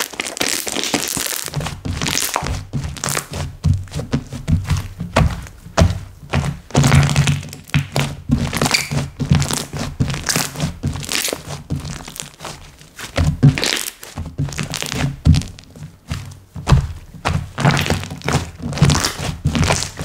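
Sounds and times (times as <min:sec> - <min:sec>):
slime squished by hand: 0:06.7 - 0:15.7, 0:16.7 - 0:20.0.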